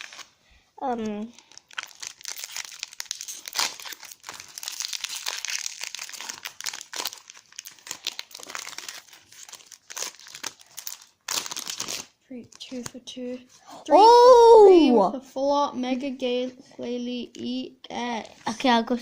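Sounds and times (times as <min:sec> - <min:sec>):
foil wrapper crinkling and tearing: 0:00.0 - 0:13.0.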